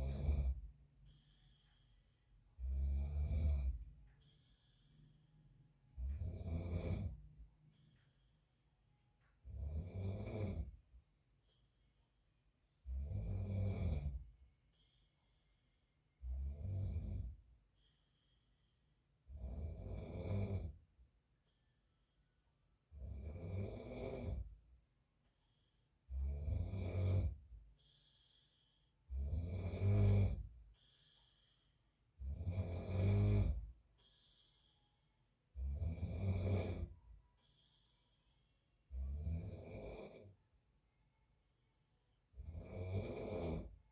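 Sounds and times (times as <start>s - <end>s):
man snoring: 0.0s - 0.7s, 2.5s - 3.9s, 6.0s - 7.3s, 9.5s - 10.8s, 12.8s - 14.3s, 16.2s - 17.4s, 19.3s - 20.8s, 22.9s - 24.5s, 26.1s - 27.4s, 29.1s - 31.1s, 32.2s - 33.7s, 35.5s - 37.0s, 38.9s - 40.3s, 42.4s - 43.8s
quiet breathing: 0.0s - 43.9s.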